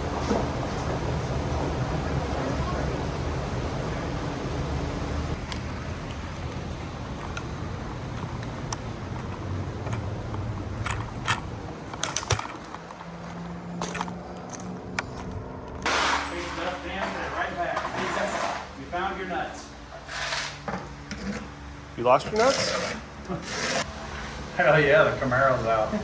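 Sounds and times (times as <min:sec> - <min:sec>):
steady low hum: 0:00.0 - 0:18.0
small metal parts clinking: 0:13.8 - 0:18.8.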